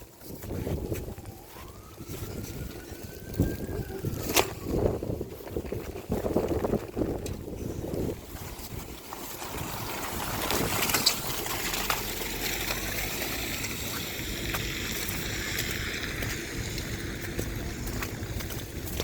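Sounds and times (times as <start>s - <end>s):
wind on microphone: 0.0s - 11.2s
snowstorm outdoor noise: 0.0s - 19.0s.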